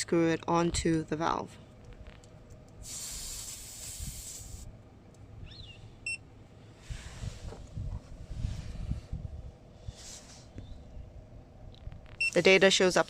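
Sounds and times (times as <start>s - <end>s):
air hissing from tire valve: 2.8s - 4.7s.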